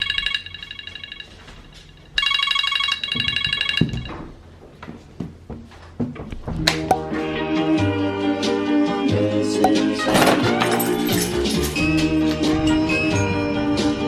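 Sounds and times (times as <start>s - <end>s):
phone alarm tone trilling: 0.0s - 4.3s.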